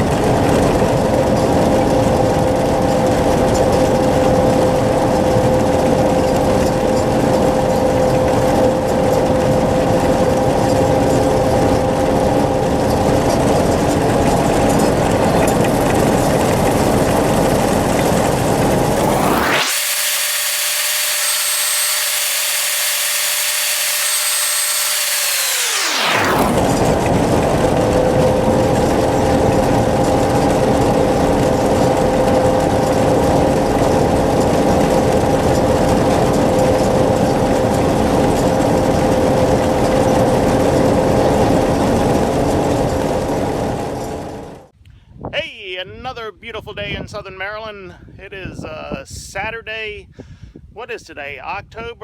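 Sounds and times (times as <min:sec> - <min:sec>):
combine harvester engine drone: 0:00.0 - 0:44.6.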